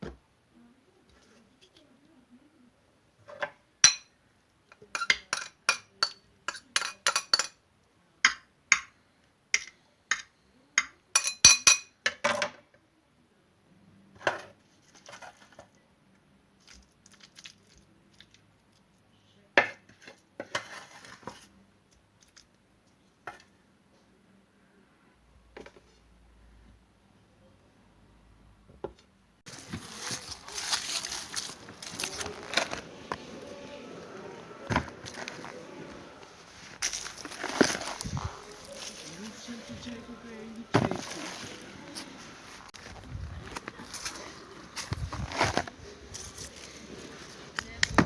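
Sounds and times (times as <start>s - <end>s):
cutlery clinking against dishes: 3.4s - 4.1s, 4.8s - 7.6s, 9.6s - 12.6s
cutlery scraping: 4.8s - 7.6s, 29.5s - 39.8s.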